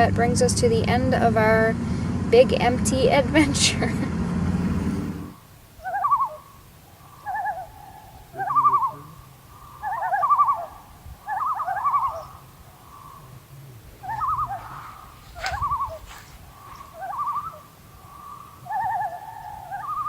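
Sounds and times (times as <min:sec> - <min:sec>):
loons calling: 0:04.4 - 0:20.0.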